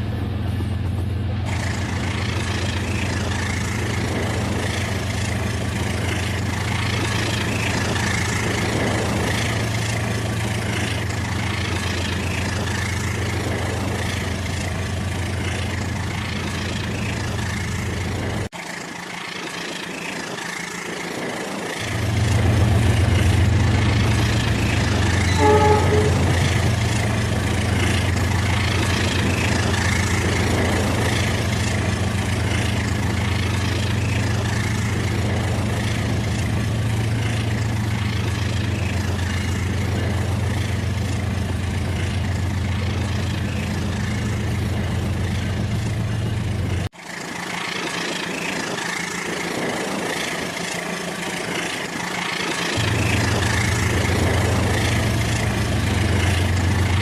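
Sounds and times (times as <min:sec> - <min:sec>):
toy train motor hum and rattle: 0:01.5 - 0:57.0
brief pitched tone: 0:25.2 - 0:26.8.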